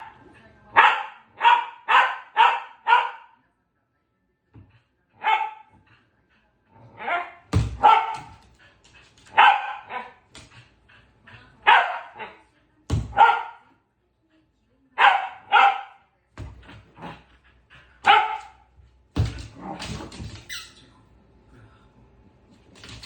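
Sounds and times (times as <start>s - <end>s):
dog barking: 0.7s - 3.4s, 5.2s - 5.7s, 7.0s - 8.4s, 9.3s - 10.2s, 11.6s - 12.4s, 13.0s - 13.7s, 15.0s - 16.1s, 18.0s - 18.6s.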